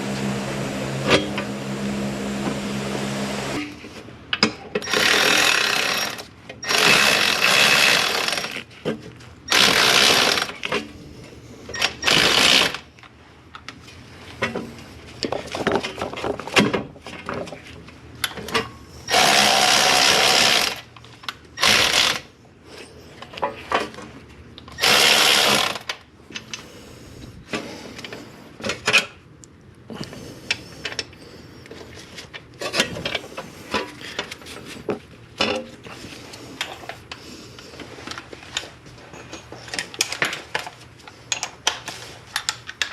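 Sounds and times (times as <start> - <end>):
power tool bursts: 0.0 - 3.6, 4.8 - 8.6, 9.5 - 10.6, 11.8 - 12.8, 19.1 - 20.9, 21.6 - 22.3, 24.8 - 25.9.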